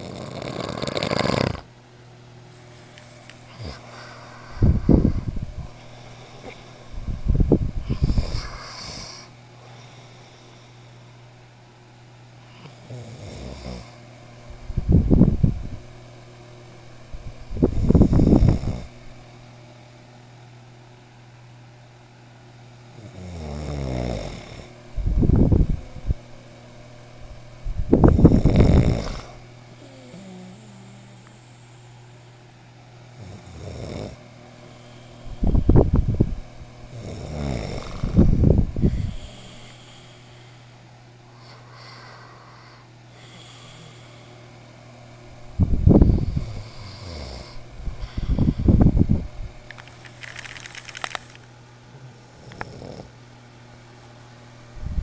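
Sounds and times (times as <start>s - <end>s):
man snoring: 0.0s - 1.7s, 3.5s - 5.1s, 7.8s - 10.7s, 12.6s - 14.0s, 17.7s - 18.9s, 22.9s - 24.7s, 28.0s - 31.7s, 33.1s - 34.2s, 36.9s - 40.2s, 41.4s - 44.2s, 46.2s - 47.6s, 51.9s - 53.1s.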